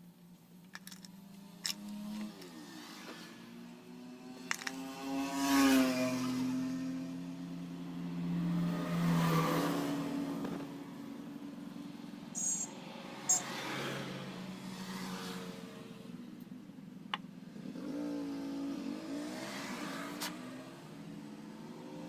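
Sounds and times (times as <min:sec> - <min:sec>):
motorcycle engine revving: 0:01.4 - 0:07.3, 0:17.5 - 0:22.0.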